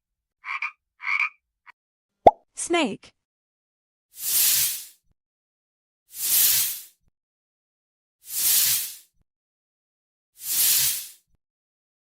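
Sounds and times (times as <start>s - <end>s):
snake hissing: 10.4s - 11.2s.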